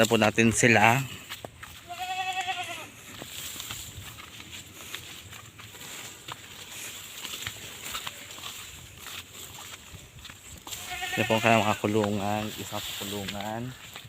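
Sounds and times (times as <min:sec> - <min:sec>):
goat bleating: 0:01.8 - 0:03.1, 0:10.6 - 0:12.4.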